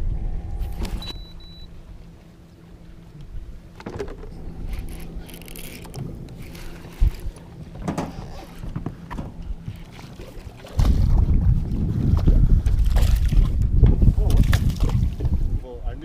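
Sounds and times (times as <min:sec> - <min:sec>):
loud low rumble: 0:00.0 - 0:02.1
boat motor humming: 0:00.0 - 0:14.4.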